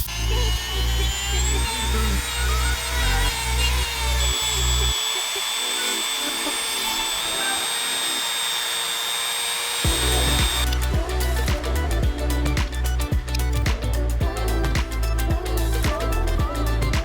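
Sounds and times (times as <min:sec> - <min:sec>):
high-pitched whine and hiss: 0:00.0 - 0:17.0
electronic music with bass beat: 0:09.8 - 0:17.0.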